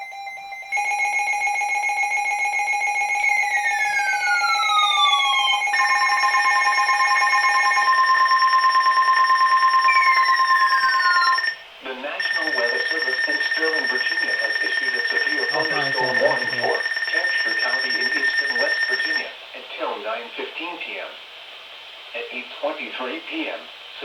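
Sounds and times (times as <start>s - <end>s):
electronic alarm tones: 0.0s - 11.6s, 12.2s - 19.2s
steady warning alarm tone: 0.0s - 19.3s.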